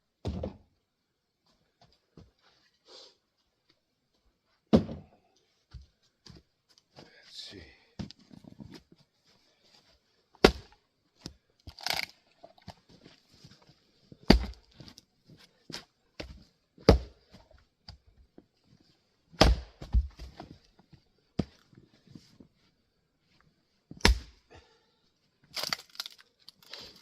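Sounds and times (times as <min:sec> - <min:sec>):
axe strikes splitting wood: 0:10.4 - 0:10.7, 0:14.3 - 0:14.6, 0:16.8 - 0:17.2, 0:19.4 - 0:20.2, 0:24.0 - 0:24.4.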